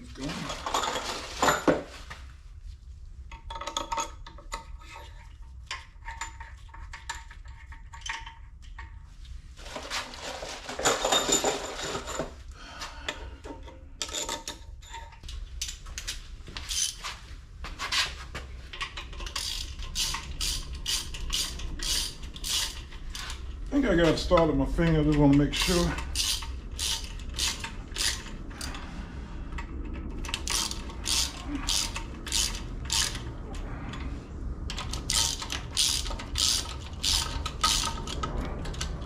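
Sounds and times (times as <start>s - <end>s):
metal tools clinking: 0.1s - 1.9s, 10.3s - 12.4s, 13.6s - 16.1s, 18.7s - 28.8s.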